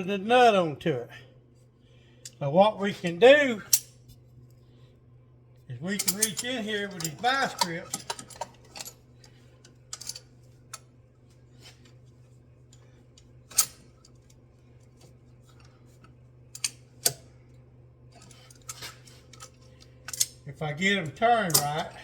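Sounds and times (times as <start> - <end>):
steady low hum: 0.0 - 22.0
locking pliers clinking on metal: 6.0 - 8.9, 21.5 - 21.9.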